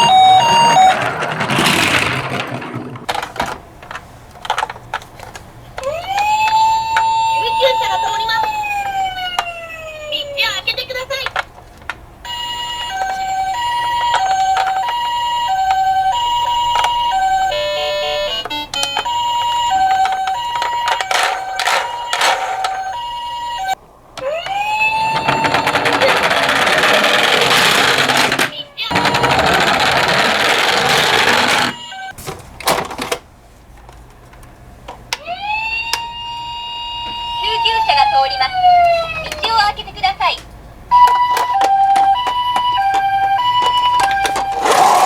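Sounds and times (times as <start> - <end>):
two-tone ambulance siren: 0.0 - 1.9, 5.8 - 11.3, 12.2 - 32.2, 35.2 - 39.8, 40.9 - 45.0
toy car rattling: 0.0 - 32.2, 40.9 - 45.0.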